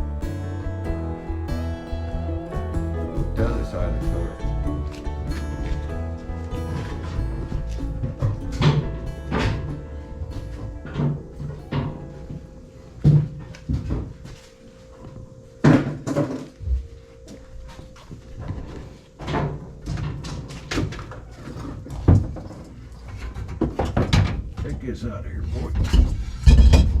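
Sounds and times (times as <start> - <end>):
clunks and knocks: 0.0 - 14.2, 19.2 - 24.8, 25.8 - 27.0
faint background music: 0.0 - 26.8.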